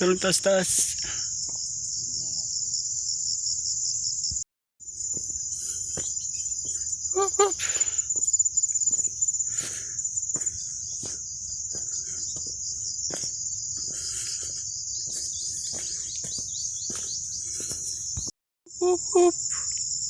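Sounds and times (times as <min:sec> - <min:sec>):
insect chorus: 0:00.0 - 0:20.0
scuffs and knocks: 0:10.4 - 0:18.3.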